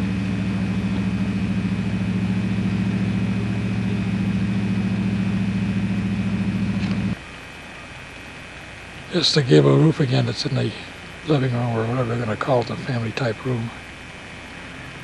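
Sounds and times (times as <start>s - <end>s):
engine idling: 0.0s - 15.0s.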